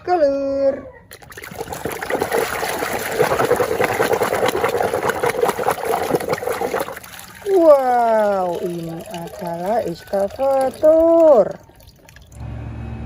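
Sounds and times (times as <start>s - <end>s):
water running and splashing: 1.1s - 12.4s.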